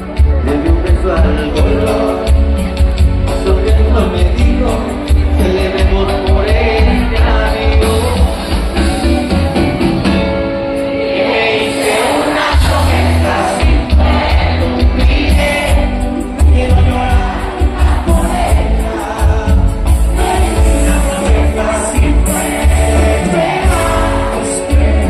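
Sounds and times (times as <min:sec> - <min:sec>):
person singing: 0:00.0 - 0:09.6, 0:10.8 - 0:25.0
steady percussion: 0:11.7 - 0:25.0
pulsing bass line: 0:12.5 - 0:25.0.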